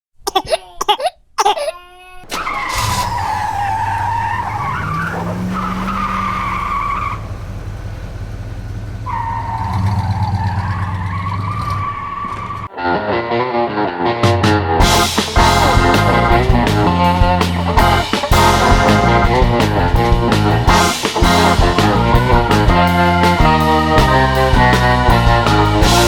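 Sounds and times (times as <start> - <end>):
tyre squeals: 2.0 - 12.7
racing car engine hum: 2.2 - 12.7.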